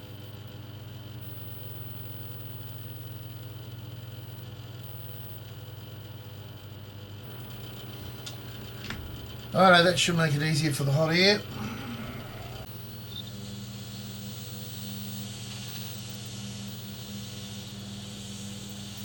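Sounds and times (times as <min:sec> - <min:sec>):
electronic equipment hum: 0:07.2 - 0:19.0.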